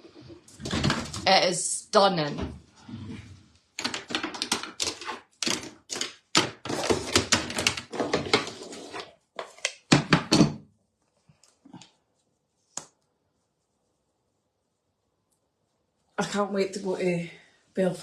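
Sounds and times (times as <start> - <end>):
rapid knocks and clatter: 3.8 - 8.4.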